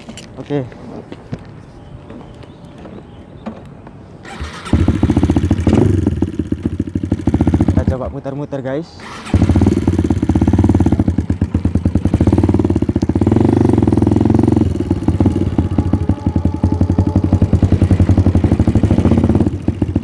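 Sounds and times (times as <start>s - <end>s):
dirt bike engine revving: 4.2s - 8.0s, 9.0s - 20.0s.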